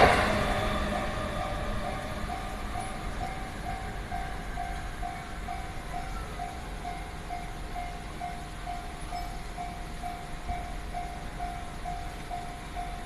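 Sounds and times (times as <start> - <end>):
level crossing warning bell: 0.0 - 13.0
passing train: 0.0 - 13.0.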